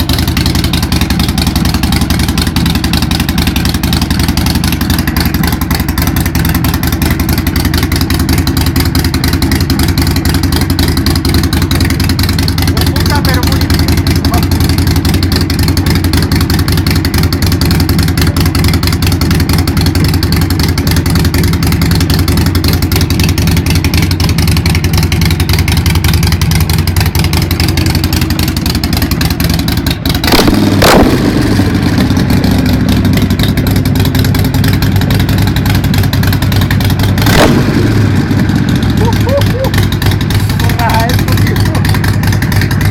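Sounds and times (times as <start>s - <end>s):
motorcycle engine idling loudly: 0.0s - 42.9s.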